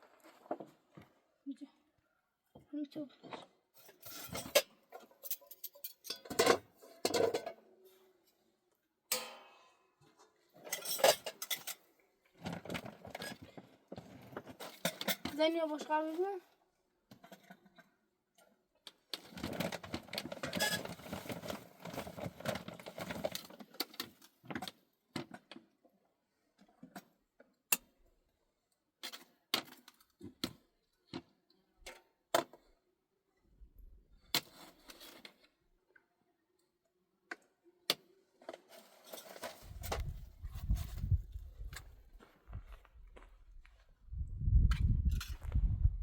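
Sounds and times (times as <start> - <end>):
objects clattering and knocking: 2.6 - 7.9, 9.1 - 16.3, 19.0 - 25.7, 38.4 - 42.0.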